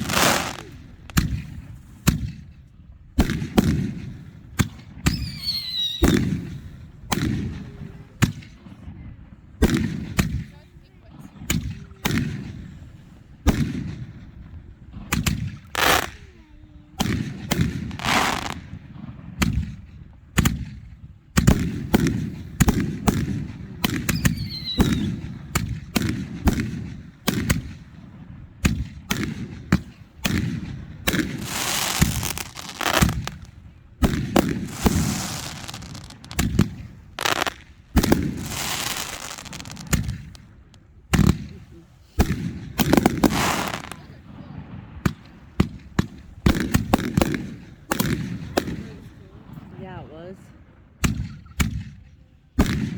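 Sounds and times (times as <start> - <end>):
firework crackling: 0.0 - 2.4, 15.1 - 18.7, 21.4 - 27.8, 28.6 - 44.2
fireworks bangs: 0.0 - 2.5, 3.2 - 9.0, 9.6 - 49.7
falling firework whistle: 5.1 - 6.2, 24.1 - 25.2.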